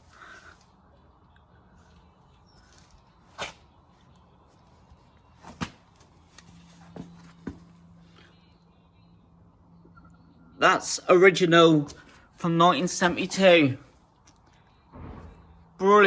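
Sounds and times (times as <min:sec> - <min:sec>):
faint low hum: 0:00.0 - 0:16.0
sharp knocks: 0:15.0 - 0:15.6.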